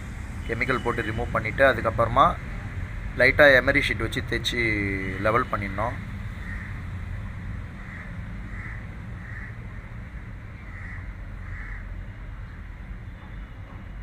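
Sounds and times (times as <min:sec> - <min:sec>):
crow cawing: 0:06.4 - 0:06.8, 0:07.8 - 0:12.0.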